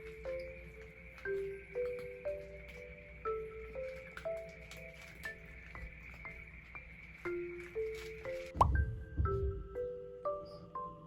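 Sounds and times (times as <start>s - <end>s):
quiet mallet percussion tune: 8.5s - 11.0s.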